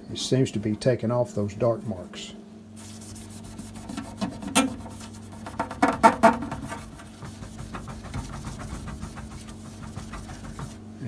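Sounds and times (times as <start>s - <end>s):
paper towel scrubbing plastic: 2.8s - 11.0s.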